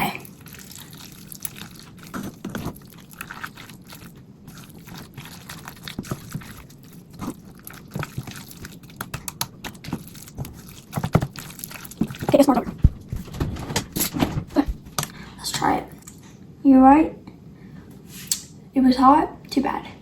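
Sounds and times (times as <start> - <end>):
wet squelching of pasta: 0.0 - 13.3.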